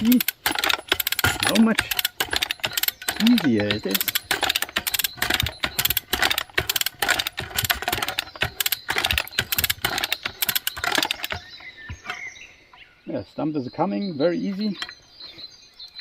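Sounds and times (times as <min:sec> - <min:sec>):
chain puller ratchet clicking: 0:00.0 - 0:12.2.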